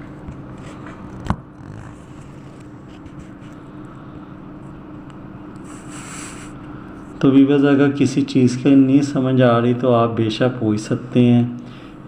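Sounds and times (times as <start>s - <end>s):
low background hum: 0.0s - 12.0s
faint light scratches: 1.6s - 3.6s.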